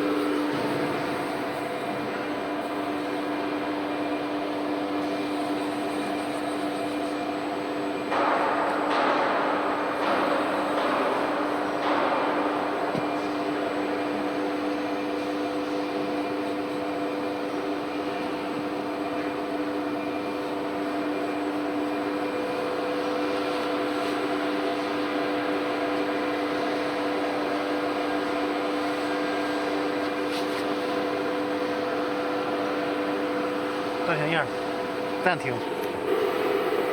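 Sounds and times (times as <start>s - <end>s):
cnc router humming: 0.0s - 8.0s, 30.9s - 36.9s.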